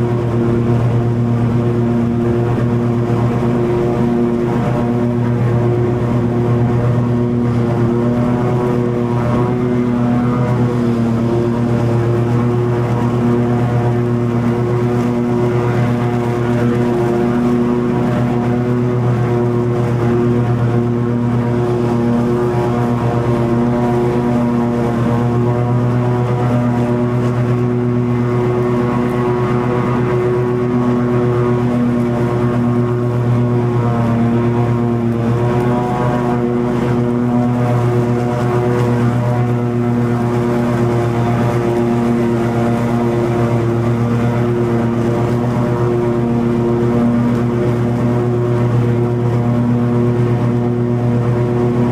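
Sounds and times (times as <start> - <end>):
blades cutting long grass: 0.0 - 51.9
mower engine drone: 0.0 - 51.9.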